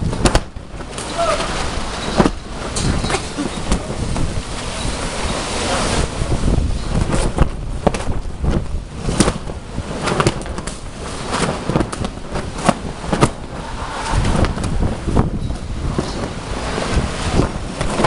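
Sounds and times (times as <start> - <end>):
sharp snaps and cracks: 0.0 - 1.6, 6.9 - 13.4
wind buffeting microphone: 0.0 - 18.0.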